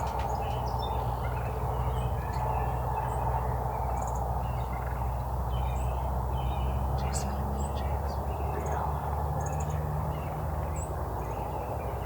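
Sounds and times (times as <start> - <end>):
turkeys gobbling: 0.0 - 5.2
small birds chirping: 0.0 - 12.0.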